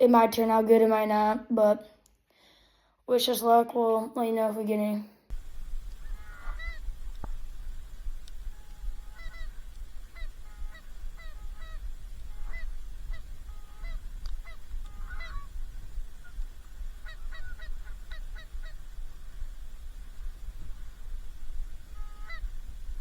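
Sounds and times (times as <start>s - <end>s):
geese honking: 5.3s - 23.0s
wind on microphone: 5.3s - 23.0s.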